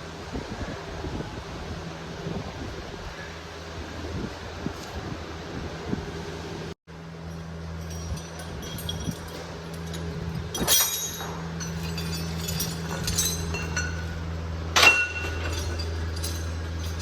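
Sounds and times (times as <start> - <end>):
low mechanical hum: 0.0 - 17.0
metal tools clinking: 7.2 - 17.0.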